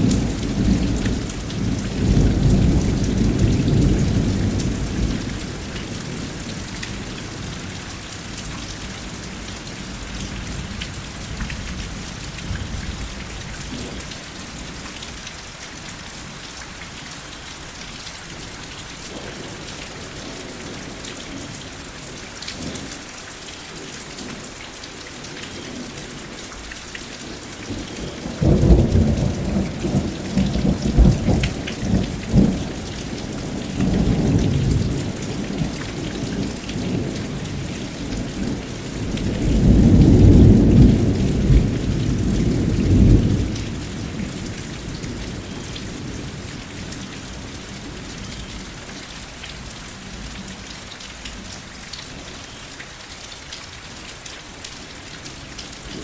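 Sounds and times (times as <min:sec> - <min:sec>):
rolling thunder rumbles: 0:00.0 - 0:07.6, 0:27.7 - 0:47.0
steady rain: 0:00.0 - 0:56.0.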